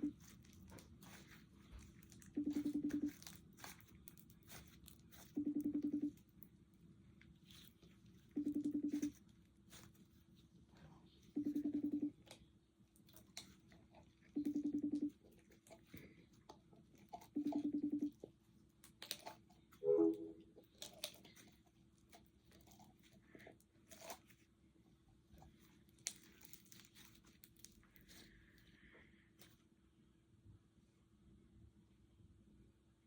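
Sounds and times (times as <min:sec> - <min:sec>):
slime crackling and popping: 0:00.1 - 0:05.4, 0:25.9 - 0:28.2.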